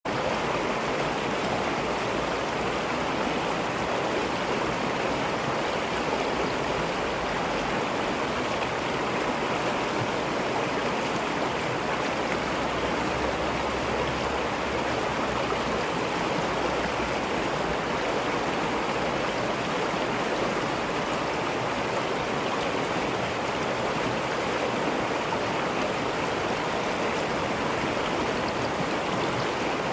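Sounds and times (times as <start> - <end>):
stream flowing over rocks: 0.1 - 29.9.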